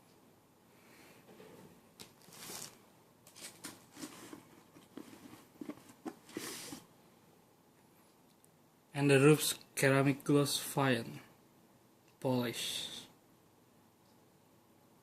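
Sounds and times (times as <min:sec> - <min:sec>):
packaging rustling: 0:02.0 - 0:06.8.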